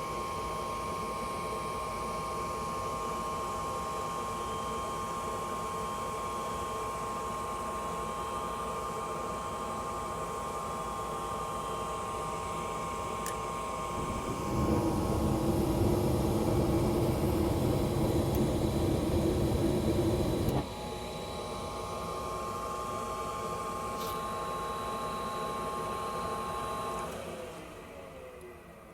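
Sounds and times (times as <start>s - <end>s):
furnace motor hum: 11.2s - 28.9s
burners low rumble: 14.0s - 20.6s
furnace click: 14.0s - 20.6s.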